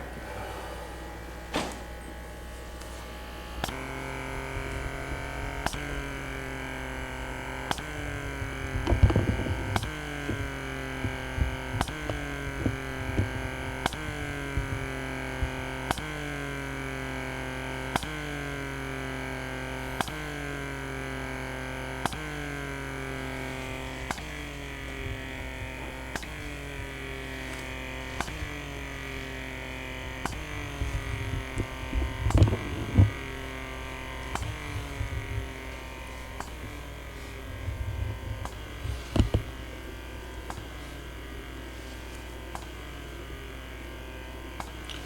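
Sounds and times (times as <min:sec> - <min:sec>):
low thumps: 0:00.0 - 0:03.7
soft sustained chords: 0:00.0 - 0:07.7
steady low hum: 0:00.0 - 0:45.0.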